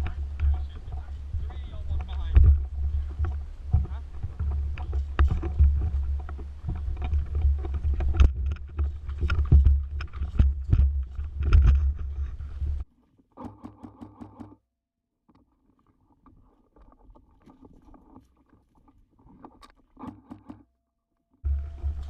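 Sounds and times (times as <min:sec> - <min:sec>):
rumbling on microphone: 0:00.0 - 0:12.8, 0:21.5 - 0:22.0
crackles and crunches of brush: 0:00.0 - 0:13.0.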